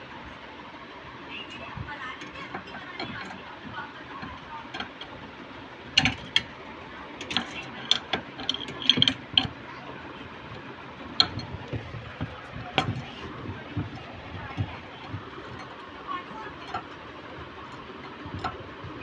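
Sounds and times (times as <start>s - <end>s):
tools clicking and knocking: 2.2s - 5.3s, 5.9s - 6.6s, 7.2s - 9.6s, 10.5s - 19.0s.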